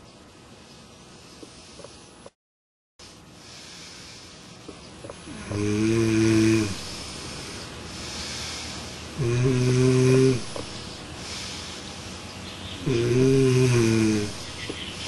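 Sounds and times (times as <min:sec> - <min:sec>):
breathy exhale: 0:03.1 - 0:04.5, 0:06.6 - 0:12.2
person snoring: 0:05.1 - 0:11.7, 0:12.8 - 0:14.6.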